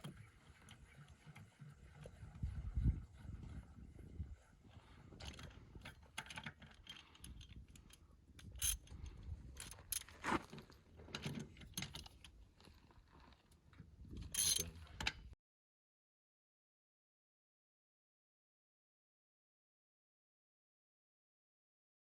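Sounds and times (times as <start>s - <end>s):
ratchet wrench clicking: 8.4s - 9.0s, 14.4s - 14.6s.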